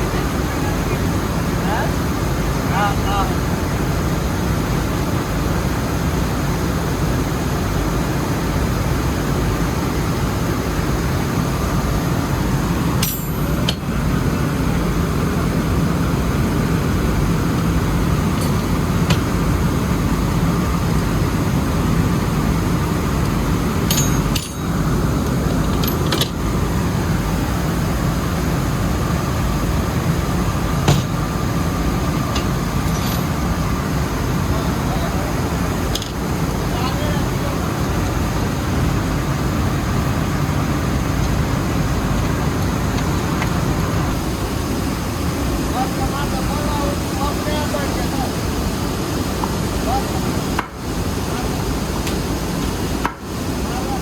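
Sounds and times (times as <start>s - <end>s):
faint steady whine: 0.0s - 54.0s
mill machinery droning: 0.0s - 54.0s.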